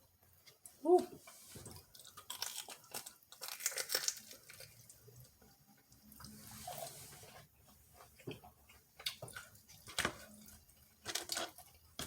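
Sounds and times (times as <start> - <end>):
crunching and chewing crispy food: 1.6 - 6.9, 8.0 - 12.0.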